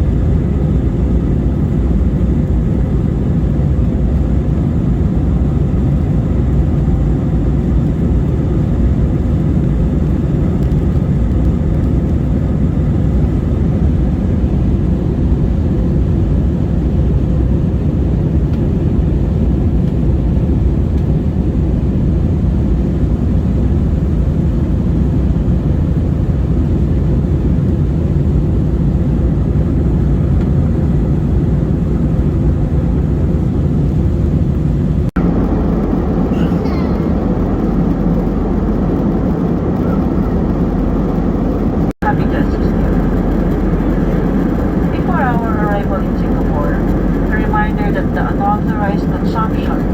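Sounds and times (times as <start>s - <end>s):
airliner cabin engine rumble: 0.0s - 49.9s
faint steady hum: 35.2s - 49.9s.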